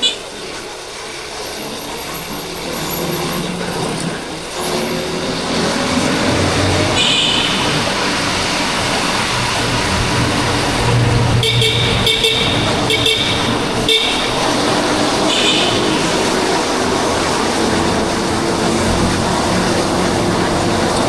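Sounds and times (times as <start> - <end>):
vehicle horn honking: 0.0 - 0.4, 6.8 - 16.7
motorcycle engine: 0.0 - 21.0
traffic noise: 0.0 - 21.0
wind: 0.0 - 21.0.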